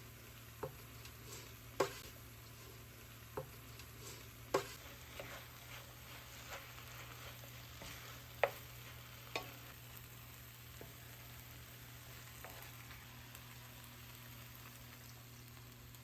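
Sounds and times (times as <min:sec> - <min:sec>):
food sizzling in a pan: 0:00.0 - 0:16.0
utensil knocking against pan: 0:01.8 - 0:02.1, 0:03.3 - 0:05.3.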